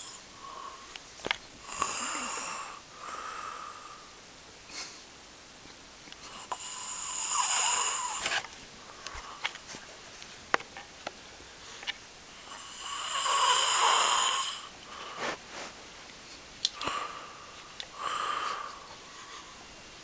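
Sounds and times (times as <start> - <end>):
person snoring: 1.6 - 4.2, 6.3 - 8.4, 12.4 - 15.4, 16.8 - 19.6.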